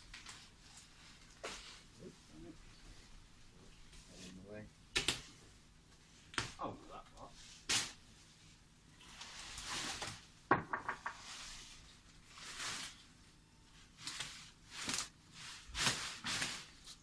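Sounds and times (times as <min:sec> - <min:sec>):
sharp knocks: 0:10.5 - 0:11.2
rattle of small knocks: 0:10.5 - 0:11.3.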